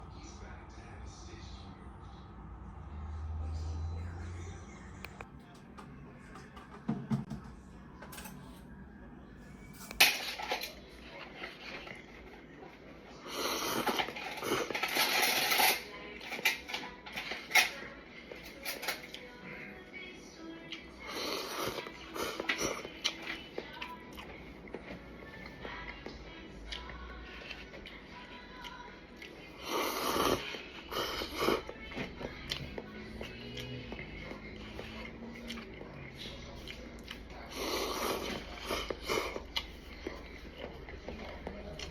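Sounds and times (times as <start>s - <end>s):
low steady hum: 0.0s - 41.9s
person chewing noodles: 13.2s - 14.7s, 21.0s - 41.9s.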